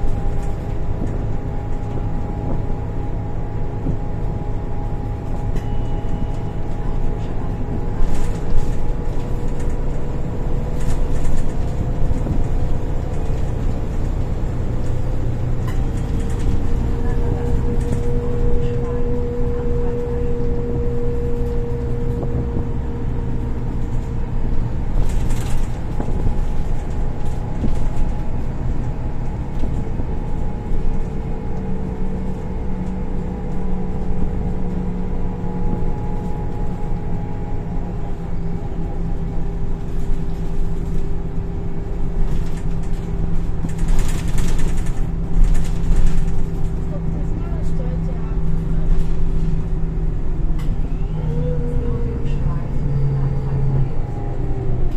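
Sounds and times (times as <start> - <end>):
transmission whine: 0.0 - 13.5, 14.1 - 42.3
bus engine rumble: 0.0 - 54.9.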